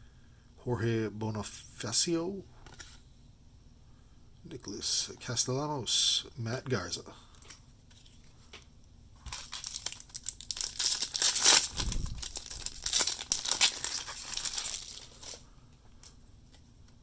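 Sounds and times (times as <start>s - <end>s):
foil wrapper crinkling and tearing: 9.2s - 15.4s.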